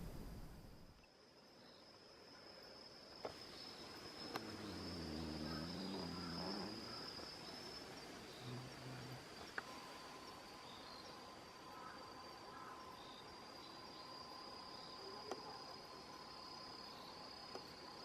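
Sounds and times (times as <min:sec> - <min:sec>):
low hum: 0:00.0 - 0:01.0
insects trilling: 0:00.0 - 0:18.0
lower insect trill: 0:00.0 - 0:18.0.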